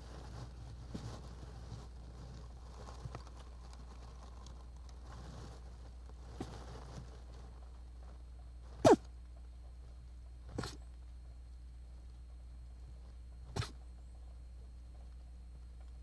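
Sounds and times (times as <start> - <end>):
faint clicks of animal movement: 0.2 - 8.5.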